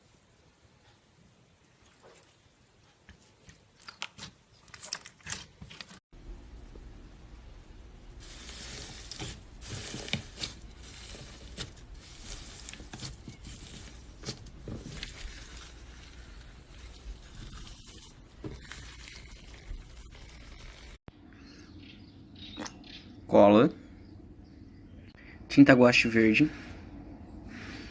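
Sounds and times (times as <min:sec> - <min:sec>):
slime squishing with wet crackles: 0:01.7 - 0:06.0.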